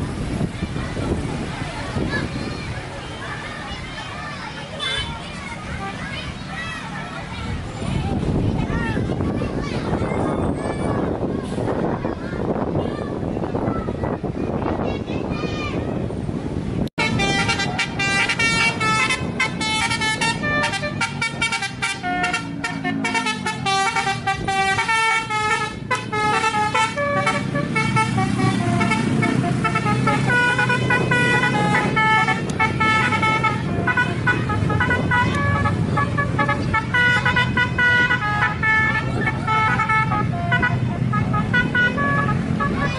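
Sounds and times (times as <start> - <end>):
bus engine running: 0.0 - 42.9
bus horn playing melody: 17.0 - 42.9.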